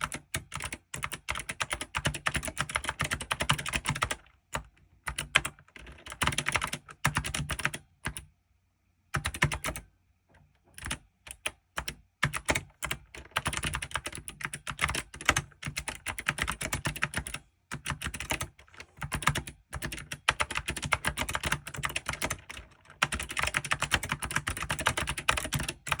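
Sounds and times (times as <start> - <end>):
mechanical keyboard typing: 0.0 - 8.2, 9.2 - 9.9, 10.8 - 26.0.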